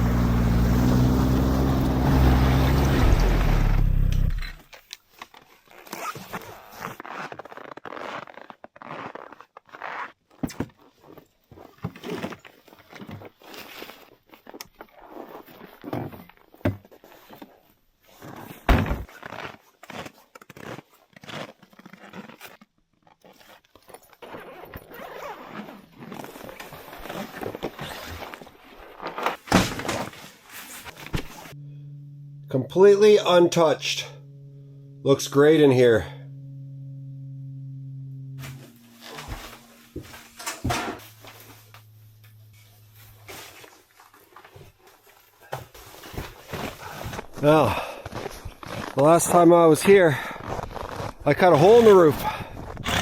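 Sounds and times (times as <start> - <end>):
handling thunks and scrapes: 26.3 - 31.6.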